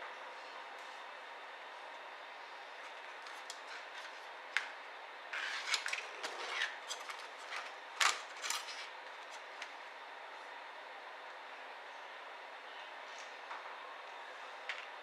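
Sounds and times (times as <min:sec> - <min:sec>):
laptop parts clicking and scraping: 0:02.8 - 0:04.2, 0:05.4 - 0:09.4.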